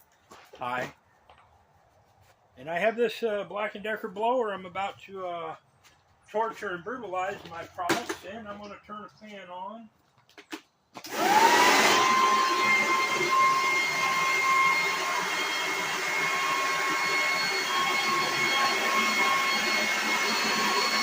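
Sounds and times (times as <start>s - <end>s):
leaf blower motor whine: 11.0s - 21.0s.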